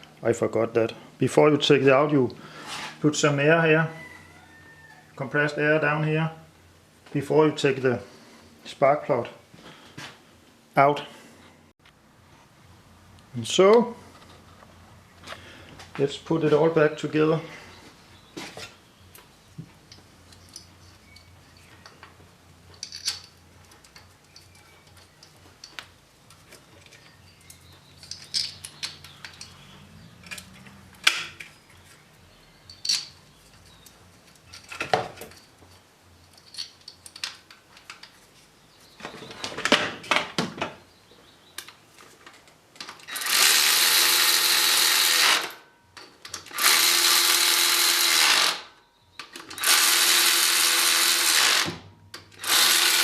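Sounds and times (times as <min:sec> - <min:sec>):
tools clicking and knocking: 0:19.9 - 0:31.6, 0:32.6 - 0:38.2
power drill running: 0:43.1 - 0:45.6, 0:46.5 - 0:48.6, 0:49.6 - 0:51.8, 0:52.4 - 0:53.0.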